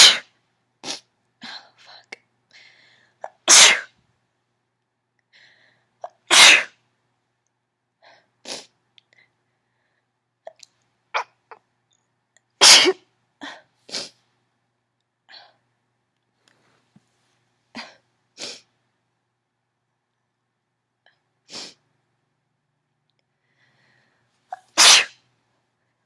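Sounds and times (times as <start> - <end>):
woman sneezing: 0.0 - 0.3, 3.2 - 3.9, 6.0 - 6.7, 12.6 - 13.0, 24.5 - 25.2.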